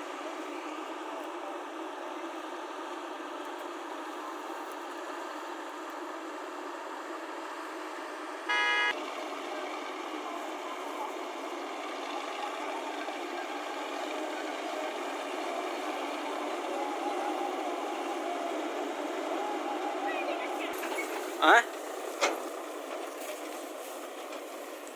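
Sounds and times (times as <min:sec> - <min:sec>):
engine running: 0:00.0 - 0:24.9
vehicle horn toot: 0:08.5 - 0:09.0.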